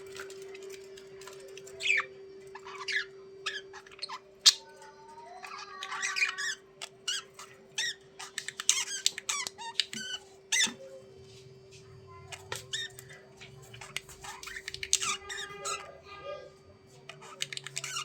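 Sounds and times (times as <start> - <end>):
budgerigars chattering and warbling: 1.6 - 4.7, 5.5 - 10.8, 12.4 - 15.9, 17.2 - 18.0.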